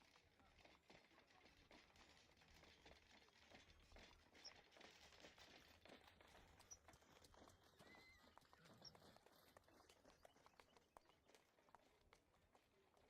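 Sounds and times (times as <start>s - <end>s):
soft ticks and crackles: 0.0s - 13.0s.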